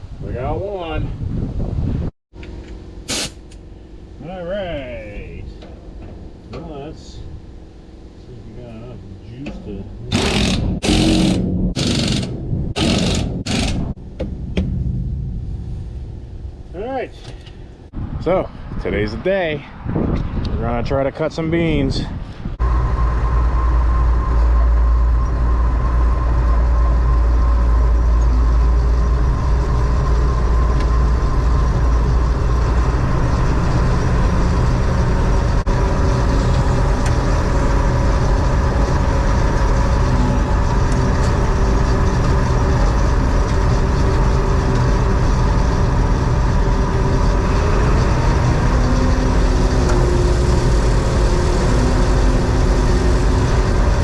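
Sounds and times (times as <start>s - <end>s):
combine harvester engine rumble: 1.3s - 17.9s, 21.7s - 54.0s.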